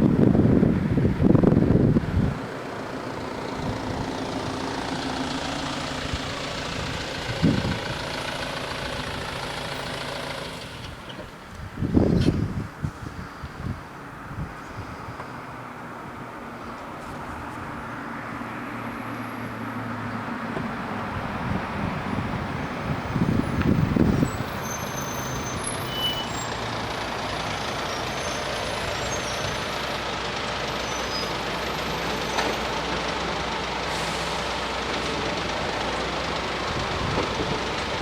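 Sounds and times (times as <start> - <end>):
diesel train rumble: 0.0 - 38.0
road vehicles running: 0.0 - 38.0
heavy vehicle air brake burst: 24.0 - 26.7, 33.8 - 34.8.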